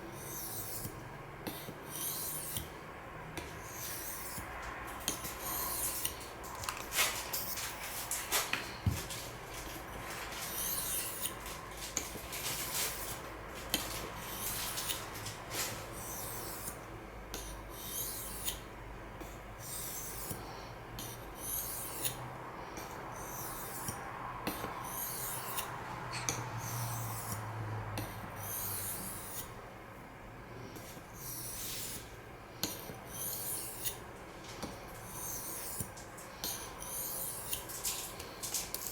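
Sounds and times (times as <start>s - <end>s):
knife scraping on sharpening stone: 0.2s - 2.7s, 3.6s - 4.5s, 5.1s - 6.2s, 17.4s - 18.6s, 23.2s - 27.4s, 31.2s - 32.1s, 32.7s - 34.0s, 35.1s - 37.7s.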